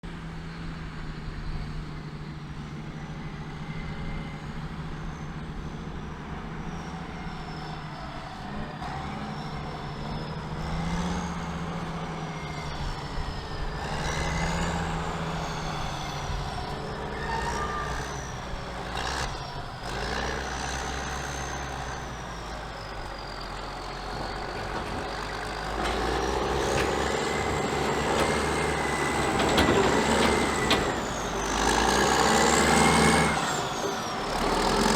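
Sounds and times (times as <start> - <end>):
diesel engines droning: 0.0 - 34.9.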